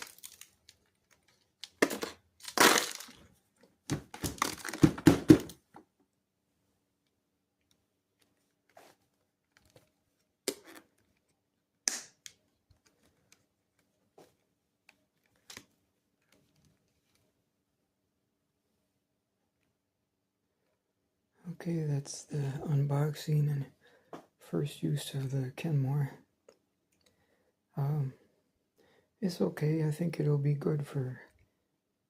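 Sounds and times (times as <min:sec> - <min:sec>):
hard plastic clattering and knocking: 0:03.8 - 0:05.9.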